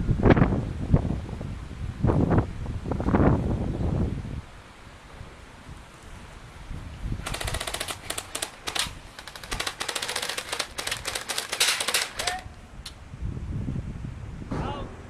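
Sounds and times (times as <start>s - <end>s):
airsoft guns firing full auto: 7.2s - 12.4s.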